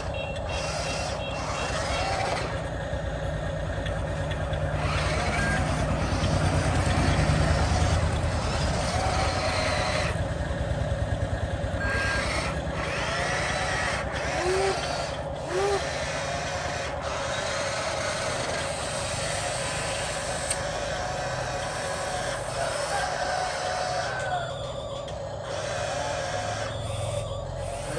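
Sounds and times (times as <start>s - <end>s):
electric motors whining: 0.0s - 27.9s.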